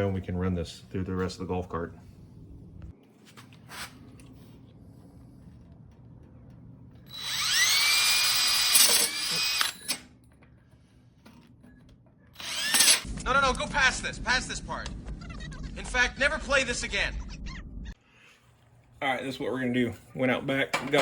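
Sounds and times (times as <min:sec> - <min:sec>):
power drill hole saw whining: 0:07.1 - 0:10.1, 0:12.4 - 0:13.1.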